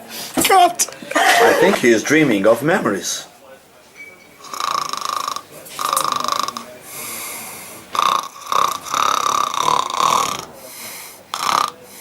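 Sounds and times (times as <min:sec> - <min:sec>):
man snoring: 0:04.5 - 0:06.8, 0:07.9 - 0:10.6, 0:11.2 - 0:11.9.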